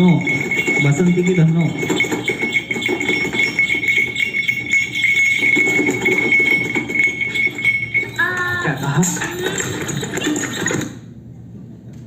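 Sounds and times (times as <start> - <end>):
harness bells jingling: 0.0 - 11.0
horse hooves clip-clopping: 0.2 - 10.9.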